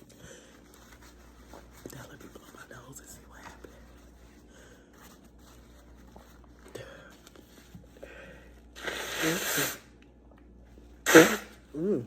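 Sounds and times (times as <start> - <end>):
person blowing nose: 8.7 - 9.9, 11.0 - 12.0.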